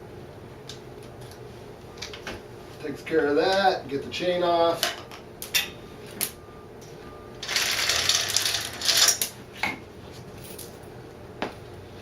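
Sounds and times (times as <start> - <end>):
drive chain clattering: 7.4 - 9.3.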